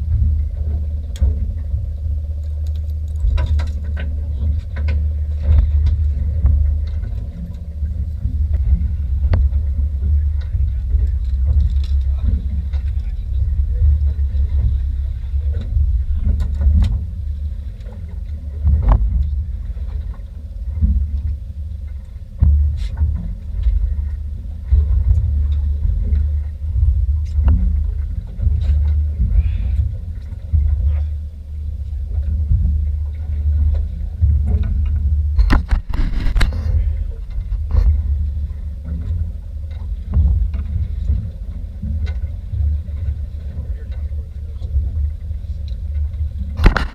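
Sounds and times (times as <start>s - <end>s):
boat low rumble: 0.0s - 46.9s
knocks and clatter: 34.2s - 38.2s, 46.0s - 46.9s.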